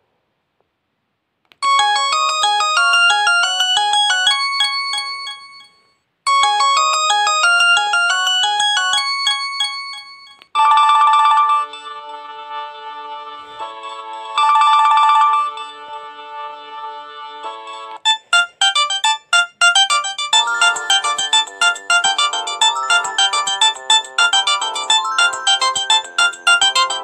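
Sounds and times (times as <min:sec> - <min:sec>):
different phone ringtone: 0:01.6 - 0:12.0, 0:13.9 - 0:15.8, 0:18.1 - 0:27.0
phone ringtone with chiming notes: 0:01.6 - 0:12.0, 0:13.9 - 0:15.8, 0:18.1 - 0:27.0.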